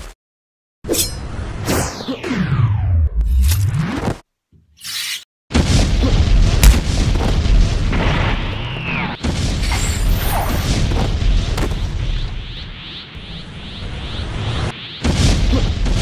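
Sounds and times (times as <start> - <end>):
explosion-like booms: 5.5 - 16.0.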